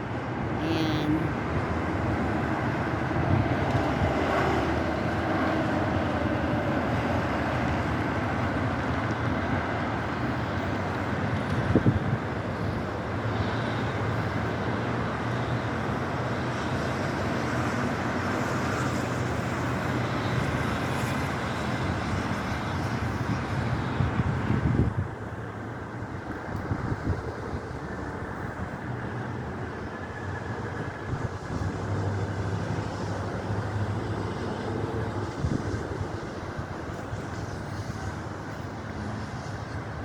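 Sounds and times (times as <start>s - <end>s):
wind on microphone: 20.3s - 39.8s.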